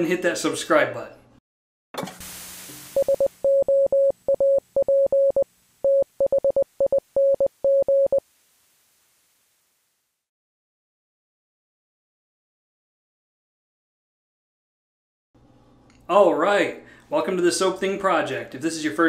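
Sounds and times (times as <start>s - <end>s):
morse code beeps: 3.0s - 8.2s.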